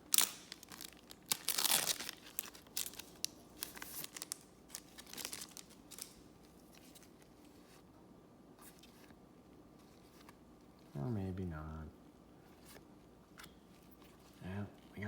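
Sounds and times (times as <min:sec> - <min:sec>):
wrapper torn open with crinkling: 0:00.0 - 0:07.2.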